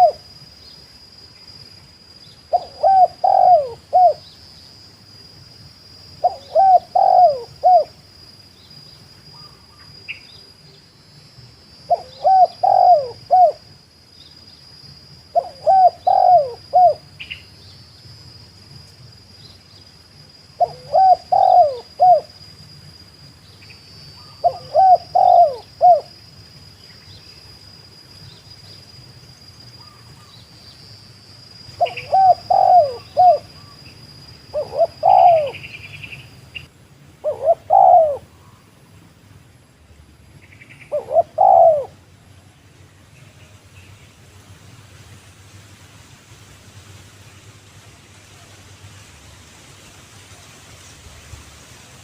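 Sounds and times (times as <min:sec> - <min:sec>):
dove cooing: 0:00.0 - 0:00.2, 0:02.5 - 0:04.3, 0:06.2 - 0:08.0, 0:11.9 - 0:13.7, 0:15.3 - 0:17.3, 0:20.6 - 0:22.3, 0:24.2 - 0:26.2, 0:31.8 - 0:33.8, 0:34.5 - 0:36.3, 0:37.2 - 0:38.6, 0:40.7 - 0:42.0.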